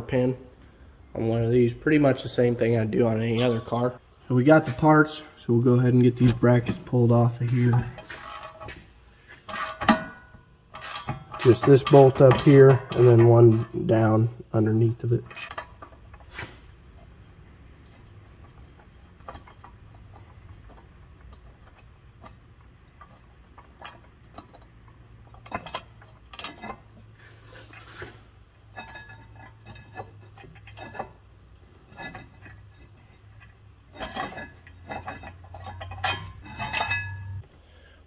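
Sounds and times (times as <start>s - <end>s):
steady low hum: 0.0s - 38.0s
steel tools clinking: 28.6s - 37.4s.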